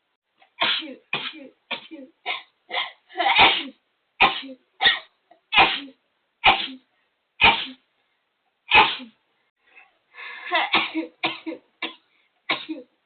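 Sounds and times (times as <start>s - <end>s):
person sneezing: 5.5s - 7.8s, 8.7s - 9.2s.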